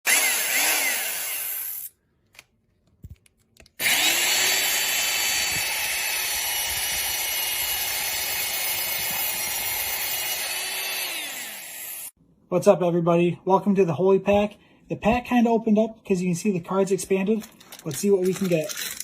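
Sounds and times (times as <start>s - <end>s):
small motor whirring: 0.1s - 1.9s, 3.8s - 12.1s.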